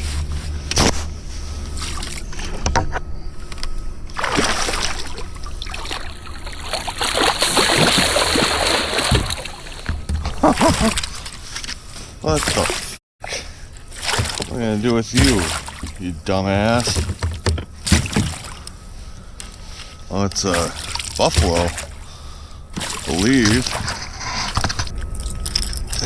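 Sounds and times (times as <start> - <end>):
fish thrashing water splashing: 4.2 - 11.7, 12.3 - 13.0, 13.7 - 18.8, 20.4 - 24.1.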